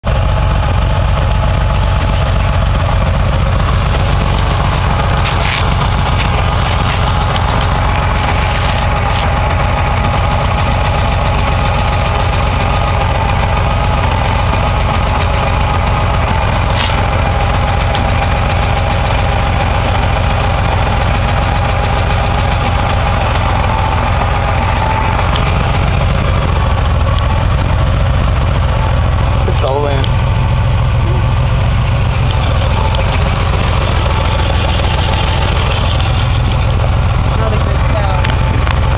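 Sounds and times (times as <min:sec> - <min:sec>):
car engine idling: 0:00.0 - 0:38.9
high-pitched transmission squeal: 0:03.7 - 0:27.0, 0:31.0 - 0:38.1.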